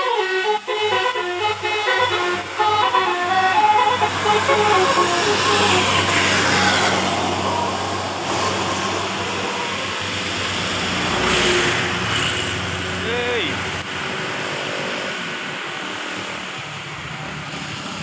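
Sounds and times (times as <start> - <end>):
musical bus horn melody: 0.0 - 11.8
engine running: 0.0 - 18.0
traffic noise: 0.0 - 18.0.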